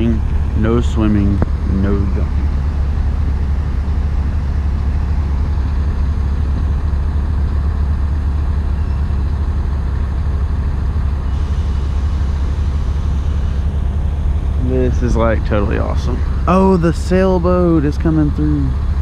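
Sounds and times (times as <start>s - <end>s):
vehicle engine idling: 0.0s - 19.0s.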